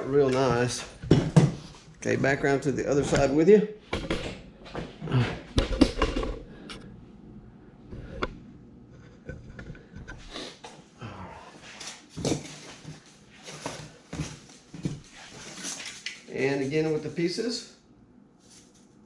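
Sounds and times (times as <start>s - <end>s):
scraping and shuffling: 8.0s - 17.6s.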